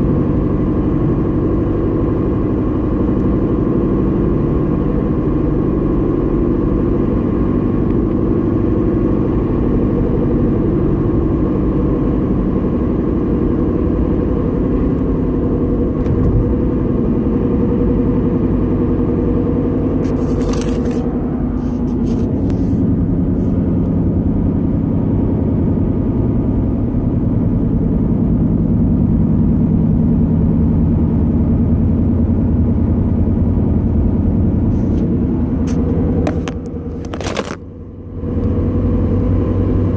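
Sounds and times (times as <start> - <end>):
car engine humming: 0.0 - 39.9.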